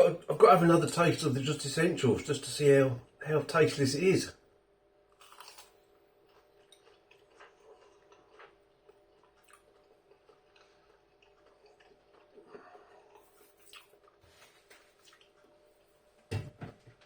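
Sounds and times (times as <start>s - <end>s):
faint chewing: 5.2s - 16.3s.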